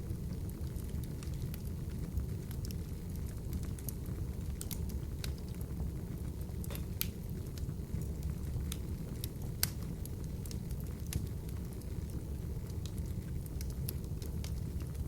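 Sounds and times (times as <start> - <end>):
fire crackling and popping: 0.0 - 15.0
low rumble of flames: 0.0 - 15.0.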